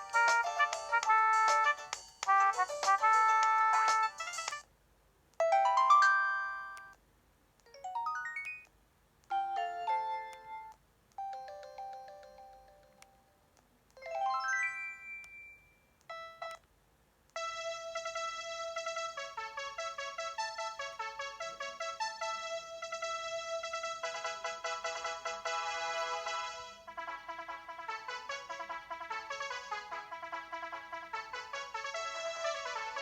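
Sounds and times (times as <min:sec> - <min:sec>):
electronic phone ringtone melodies: 0:05.4 - 0:07.0, 0:07.8 - 0:08.7, 0:09.3 - 0:13.3, 0:14.0 - 0:16.6.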